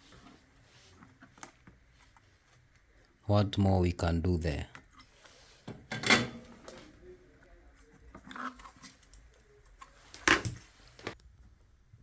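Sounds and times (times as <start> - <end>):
objects clattering on workbench: 5.6 - 6.8.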